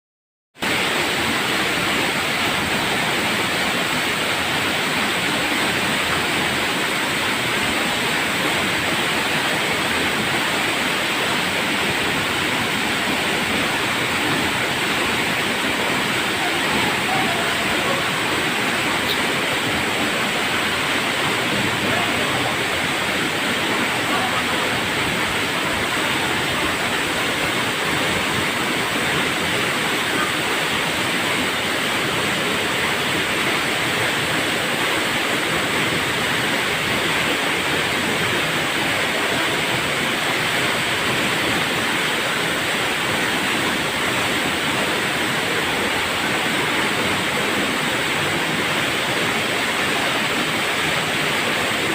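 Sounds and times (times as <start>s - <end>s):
waterfall rushing: 0.6s - 51.9s.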